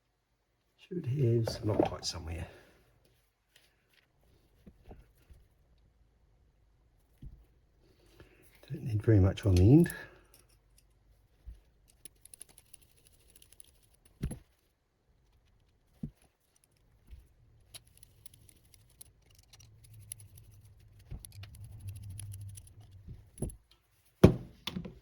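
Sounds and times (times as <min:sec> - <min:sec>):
small screws and tools clicking: 0:09.5 - 0:11.0, 0:11.7 - 0:14.4, 0:16.2 - 0:23.7.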